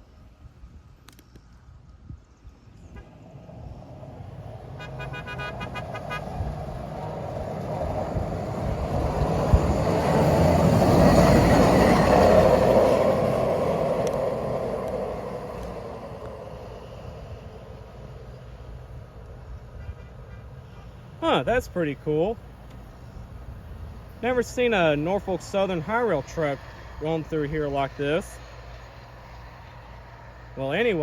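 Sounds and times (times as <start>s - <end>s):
truck rolling past: 2.9s - 19.5s
truck horn short toots: 4.8s - 6.5s, 19.8s - 20.9s.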